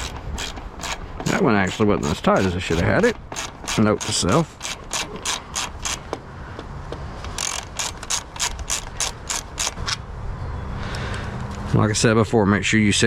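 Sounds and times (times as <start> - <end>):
ratchet wrench clicking: 0.0 - 6.2, 7.3 - 10.0.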